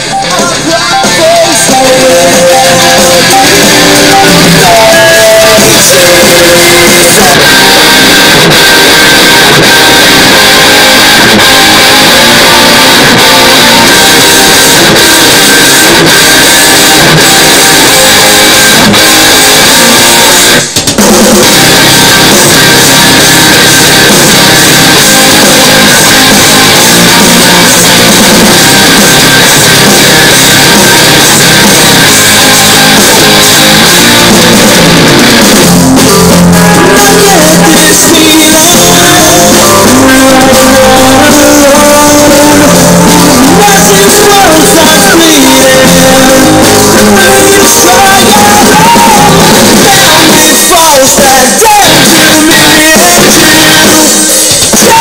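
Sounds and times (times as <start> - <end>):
rock music through speaker: 0.0 - 55.0.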